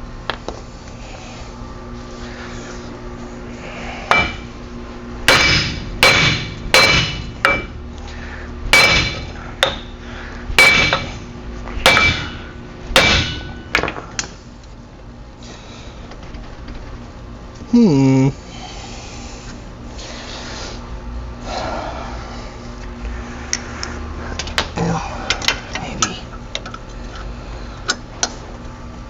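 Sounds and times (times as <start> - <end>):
hammer striking metal: 4.1 - 4.5, 5.3 - 7.8, 8.7 - 9.9, 10.6 - 11.2, 11.8 - 14.0.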